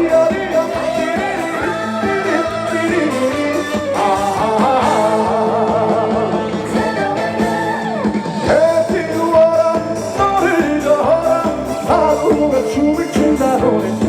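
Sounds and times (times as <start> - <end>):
live band playing: 0.0 - 14.0
person singing: 0.0 - 14.0.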